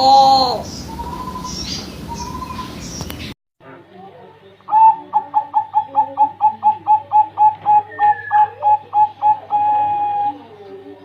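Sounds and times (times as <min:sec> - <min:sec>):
dove cooing: 0:00.0 - 0:02.6, 0:04.7 - 0:10.7.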